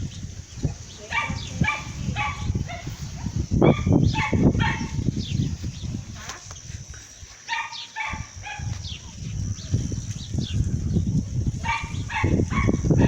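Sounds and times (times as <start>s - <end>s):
steady low rumble: 0.0s - 7.3s.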